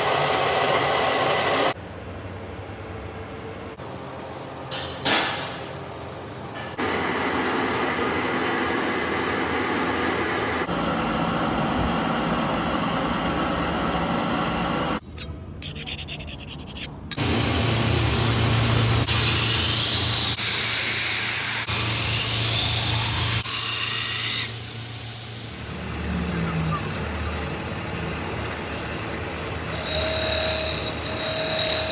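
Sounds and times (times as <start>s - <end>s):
power tool grinding metal: 17.2s - 25.7s, 29.7s - 31.9s.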